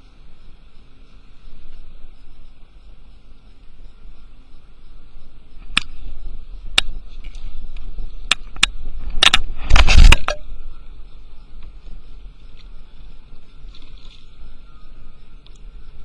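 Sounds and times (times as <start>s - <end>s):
wind rumble on microphone: 0.0s - 16.0s
sharp clicks or knocks: 8.2s - 10.5s.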